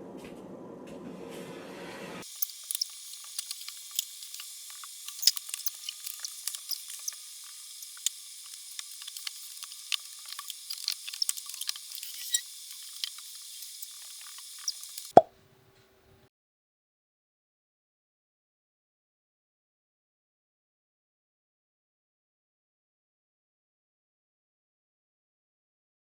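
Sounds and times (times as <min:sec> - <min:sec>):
food sizzling in a pan: 0:02.2 - 0:15.2
oil crackling and popping: 0:02.2 - 0:15.3.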